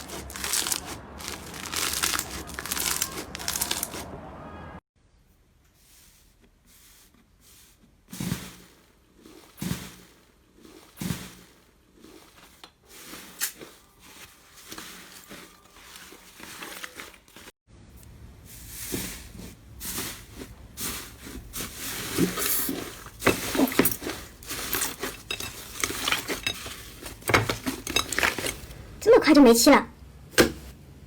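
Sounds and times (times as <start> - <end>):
slime squeezed by hand crackling: 0.0 - 4.1.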